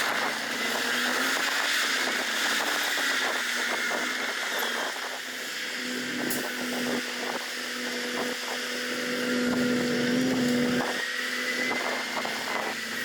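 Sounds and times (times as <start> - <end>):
high whine: 0.0 - 13.0
diesel engine running: 5.2 - 13.0.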